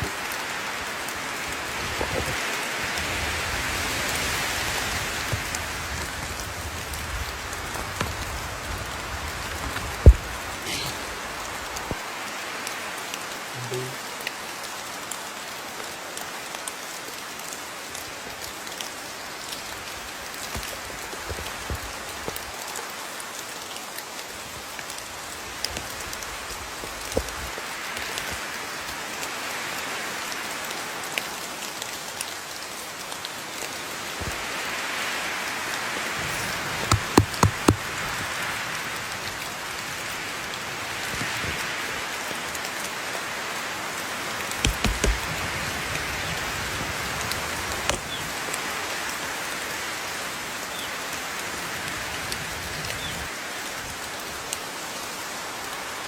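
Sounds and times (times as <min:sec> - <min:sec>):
steady rain falling: 0:00.0 - 0:56.0
sharp knocks: 0:36.2 - 0:37.9, 0:44.6 - 0:45.3.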